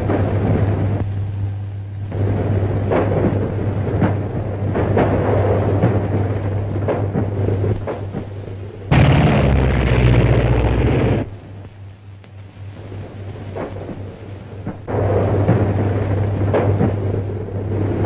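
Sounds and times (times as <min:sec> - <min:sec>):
low steady hum: 0:00.0 - 0:18.0
explosion blast: 0:08.9 - 0:11.3
film crackles: 0:08.9 - 0:11.3.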